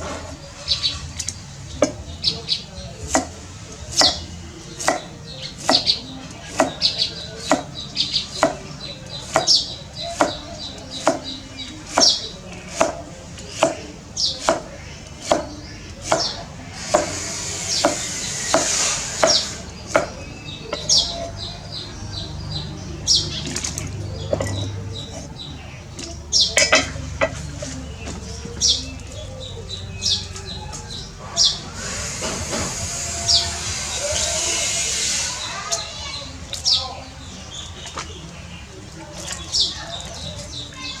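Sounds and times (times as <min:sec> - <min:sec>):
knife chopping on cutting board: 0:04.8 - 0:05.9, 0:07.4 - 0:07.8, 0:08.4 - 0:08.6, 0:11.0 - 0:20.2
brief hiss: 0:31.7 - 0:35.8.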